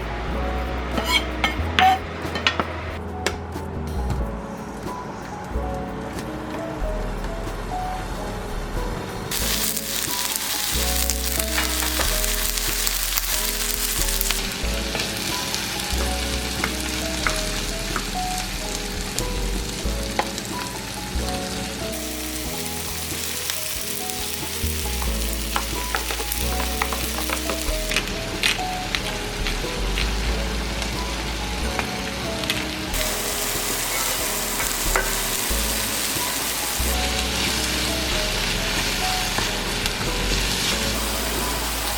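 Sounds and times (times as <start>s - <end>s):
food sizzling in a pan: 9.3s - 41.9s.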